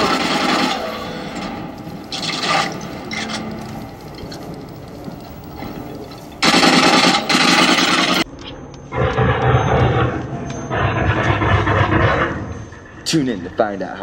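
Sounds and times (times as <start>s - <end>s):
machine-gun fire: 0.0s - 1.5s, 6.4s - 8.2s.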